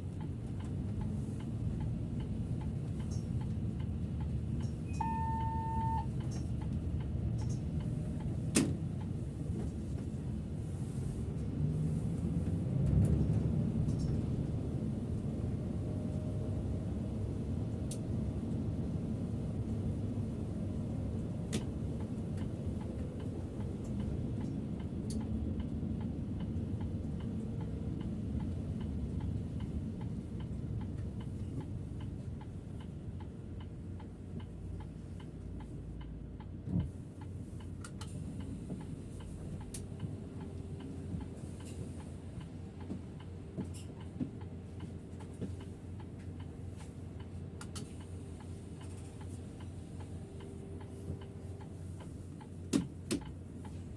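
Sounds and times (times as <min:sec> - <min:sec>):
engine and road rumble: 0:00.0 - 0:53.9
turn signal ticking: 0:00.1 - 0:09.5, 0:21.2 - 0:53.9.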